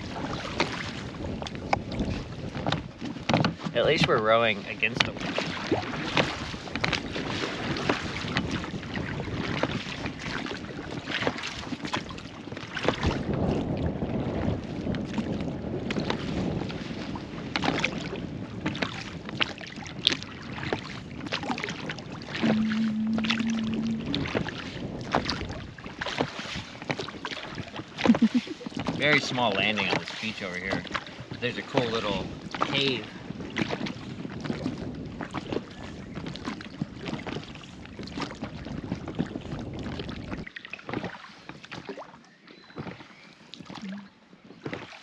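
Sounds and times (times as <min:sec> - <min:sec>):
oars knocking and splashing: 0:00.0 - 0:13.8, 0:14.4 - 0:45.0
wind buffeting microphone: 0:00.0 - 0:42.0.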